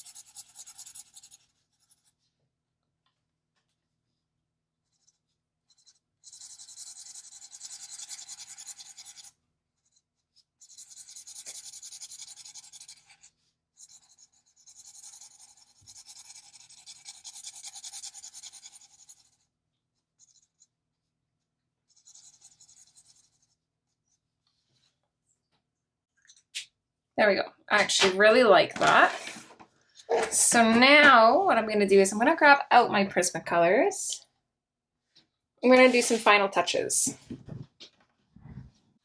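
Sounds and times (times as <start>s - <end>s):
marker scratching across paper: 0.0s - 2.2s, 4.8s - 21.1s, 21.8s - 24.7s, 35.7s - 36.4s.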